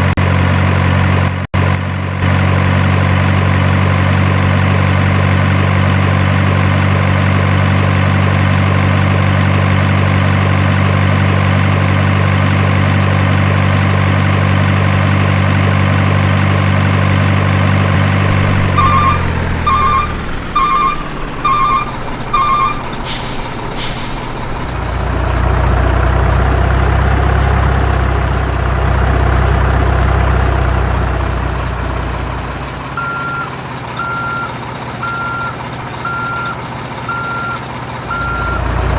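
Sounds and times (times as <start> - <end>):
diesel engine droning: 0.0 - 38.9
reversing beeps: 18.7 - 22.9, 33.0 - 38.7
short air hisses: 23.0 - 24.4.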